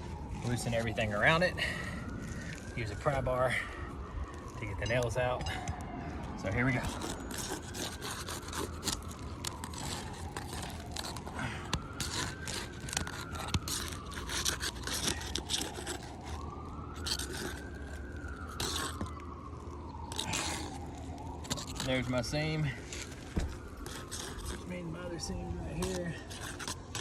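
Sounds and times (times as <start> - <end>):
siren wailing: 0.0 - 27.0
scraper blade scraping shingles: 6.5 - 27.0.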